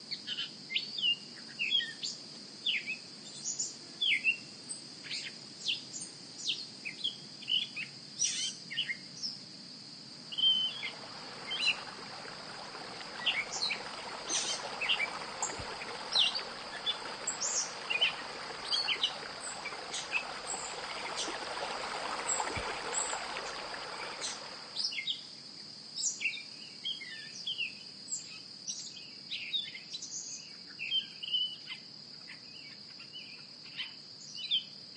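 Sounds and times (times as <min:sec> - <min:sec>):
steady hiss: 0:09.8 - 0:24.9
birds chirping: 0:10.4 - 0:24.9.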